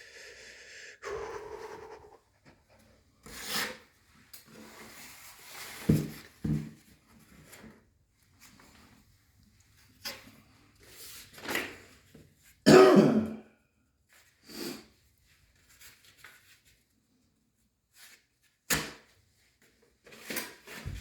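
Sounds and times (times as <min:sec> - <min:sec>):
person coughing: 0:12.7 - 0:13.5.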